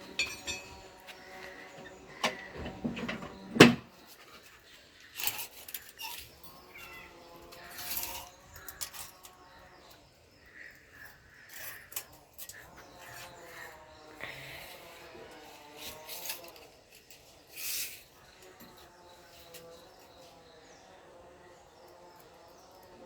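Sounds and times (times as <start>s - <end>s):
metal tools knocking and clinking: 0.0s - 0.9s.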